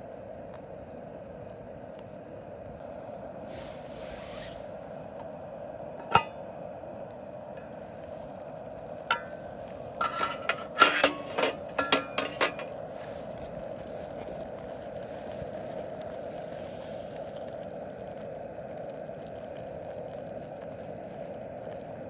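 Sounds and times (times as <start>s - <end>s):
steady background hum: 0.0s - 22.0s
metallic ring: 9.1s - 9.4s, 10.0s - 12.7s
cookware and tableware clinking: 10.0s - 12.7s.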